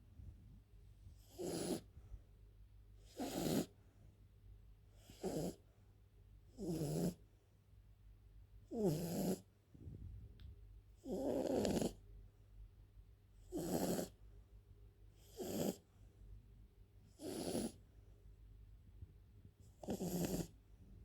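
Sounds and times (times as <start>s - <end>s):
dog snoring: 1.2s - 2.0s, 3.0s - 3.8s, 4.9s - 5.7s, 6.5s - 7.2s, 8.7s - 9.5s, 11.0s - 12.0s, 13.4s - 14.2s, 15.2s - 15.8s, 17.1s - 17.8s, 19.7s - 20.6s.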